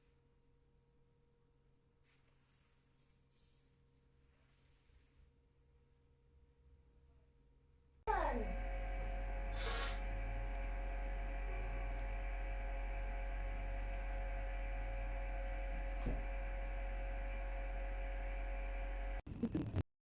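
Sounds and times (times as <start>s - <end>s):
electrical mains hum: 8.1s - 19.8s.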